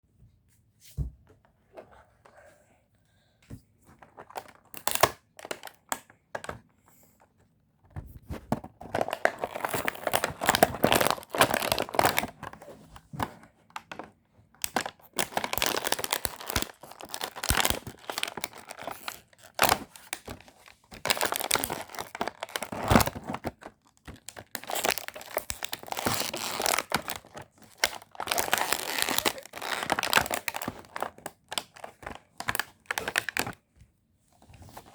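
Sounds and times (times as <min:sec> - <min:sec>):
packaging tearing and crinkling: 0:08.8 - 0:12.6, 0:14.6 - 0:33.6.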